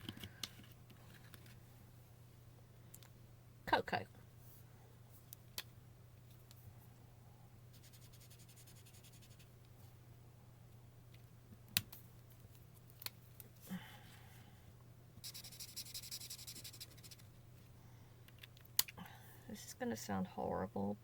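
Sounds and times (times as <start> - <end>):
low steady hum: 0.0 - 21.0
marker scratching on paper: 7.8 - 9.5, 15.2 - 17.2.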